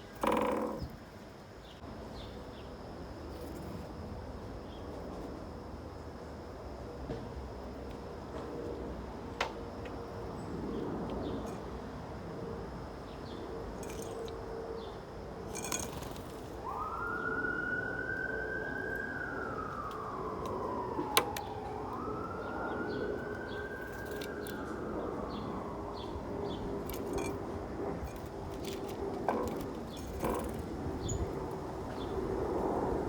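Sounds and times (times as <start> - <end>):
emergency vehicle siren wailing: 16.6 - 27.3.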